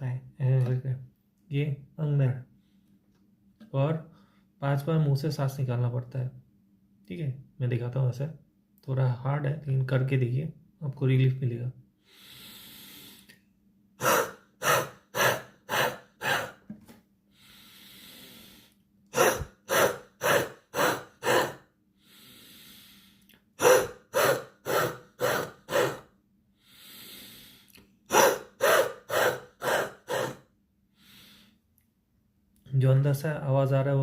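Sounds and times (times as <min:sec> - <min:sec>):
forceful puffs of breath: 0:12.0 - 0:13.3, 0:17.3 - 0:26.0, 0:26.6 - 0:31.6
man inhaling through nose: 0:12.0 - 0:13.4, 0:17.3 - 0:20.2, 0:22.0 - 0:23.9, 0:26.6 - 0:27.9, 0:30.1 - 0:31.6.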